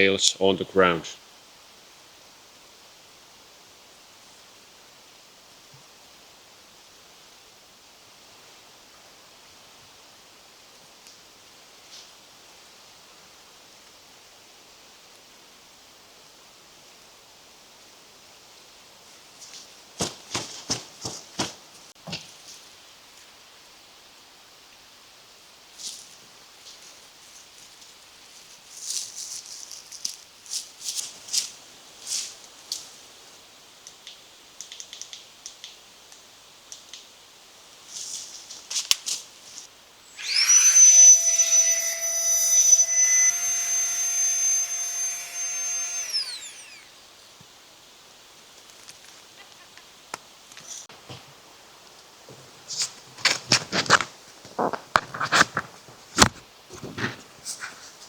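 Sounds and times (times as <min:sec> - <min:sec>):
small electric motor whirring: 0:40.2 - 0:47.0.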